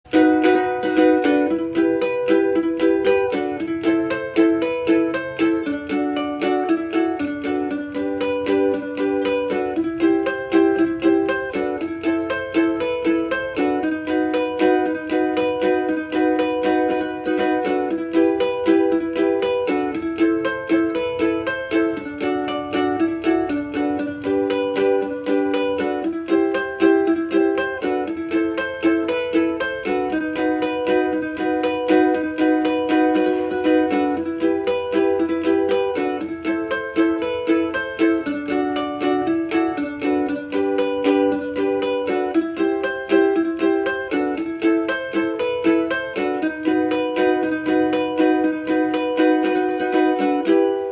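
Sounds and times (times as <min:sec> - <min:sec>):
ukulele plucked chords: 0:00.0 - 0:50.9.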